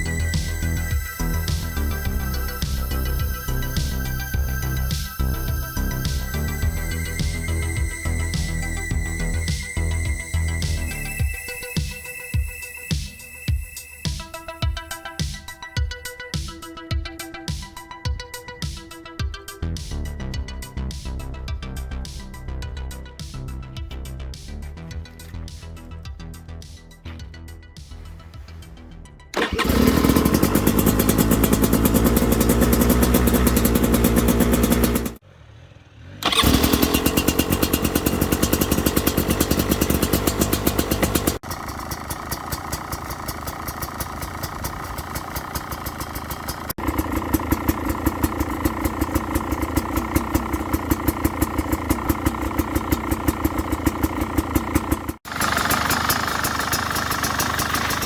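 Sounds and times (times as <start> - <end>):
two-stroke engine running: 0.0 - 15.1, 29.4 - 58.0.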